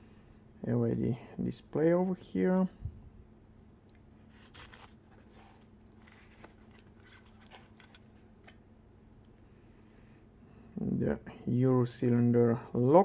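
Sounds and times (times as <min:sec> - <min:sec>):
low steady hum: 0:00.0 - 0:13.0
packaging rustling: 0:04.3 - 0:09.3.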